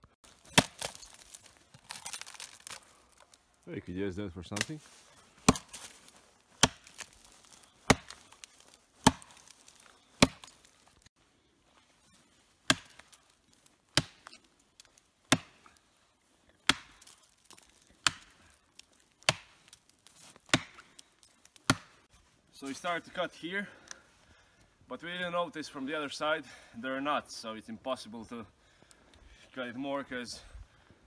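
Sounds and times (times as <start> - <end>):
axe chopping into tree trunk: 0.3 - 2.8, 5.4 - 6.0, 6.6 - 10.6, 12.6 - 13.2, 13.9 - 15.8, 16.6 - 20.9, 21.6 - 22.0.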